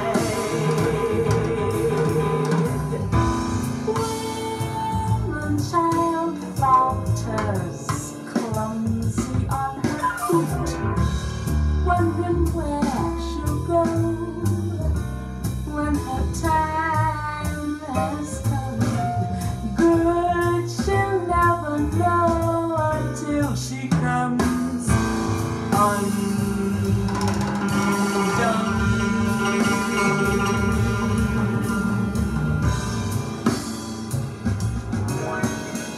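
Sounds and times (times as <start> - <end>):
person singing: 0.0 - 10.7, 25.7 - 32.1
guitar: 0.0 - 11.5, 24.2 - 35.9
bass: 0.0 - 35.9
drums: 0.0 - 35.9.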